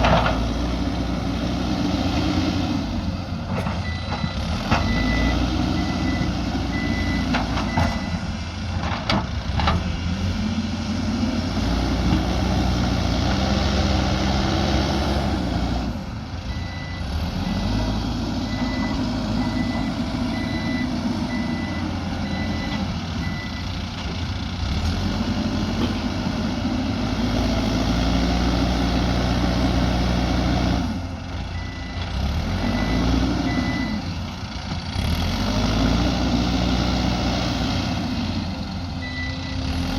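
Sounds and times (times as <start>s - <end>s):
backhoe diesel engine working: 0.0s - 39.9s
reversing alarm beeping: 3.8s - 8.2s, 16.5s - 23.7s, 31.6s - 32.0s, 32.6s - 34.1s, 39.0s - 39.6s.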